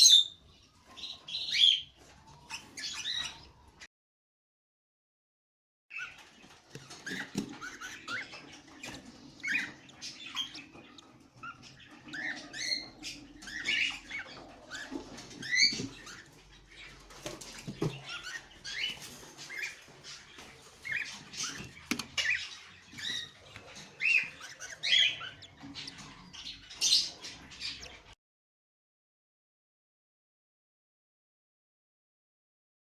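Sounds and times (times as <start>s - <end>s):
cage birds chirping: 0.0s - 3.9s, 5.9s - 28.2s.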